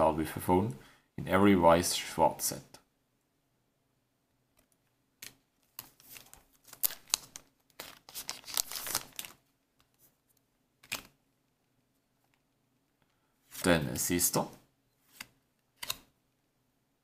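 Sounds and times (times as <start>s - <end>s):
cards rustling and scraping: 5.2s - 11.2s, 15.0s - 16.0s.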